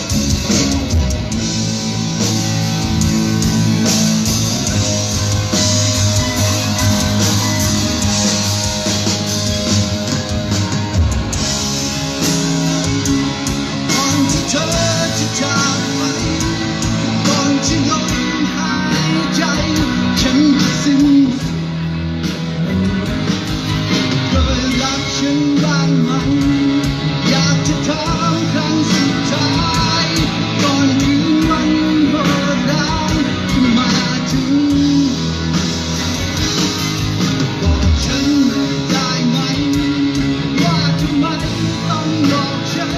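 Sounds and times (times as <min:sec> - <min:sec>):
rock music through loudspeakers: 0:00.0 - 0:42.9.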